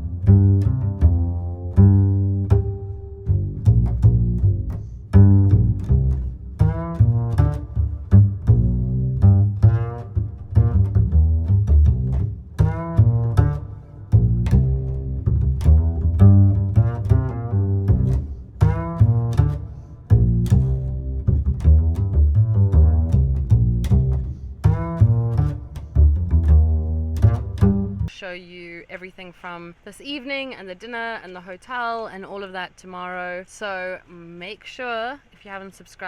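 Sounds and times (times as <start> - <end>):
instrumental music with bass: 0.0 - 28.1.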